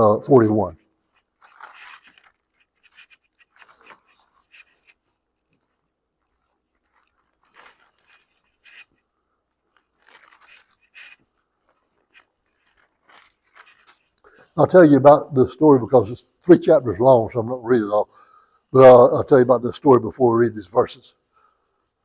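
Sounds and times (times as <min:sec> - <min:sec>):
paper pages rustling: 0:00.3 - 0:14.3.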